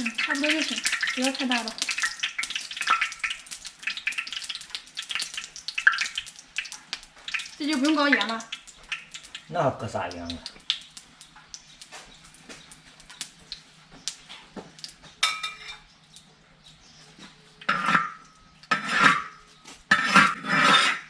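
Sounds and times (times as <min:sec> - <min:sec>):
metal utensil scraping a pot: 0:15.2 - 0:15.9, 0:17.6 - 0:21.0.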